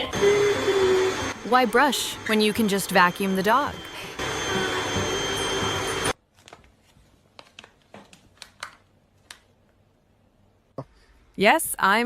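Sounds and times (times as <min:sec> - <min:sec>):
vacuum cleaner running: 0:00.0 - 0:06.2.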